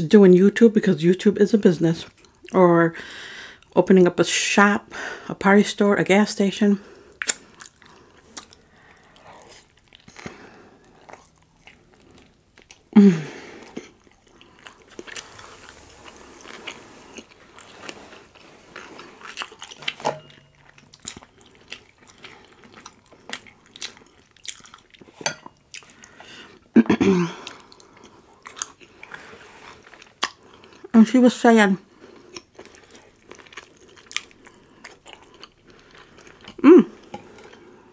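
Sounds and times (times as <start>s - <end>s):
person chewing crunchy food: 7.0s - 26.7s, 27.3s - 30.9s, 31.9s - 37.9s
wet mouth clicks: 7.2s - 8.6s.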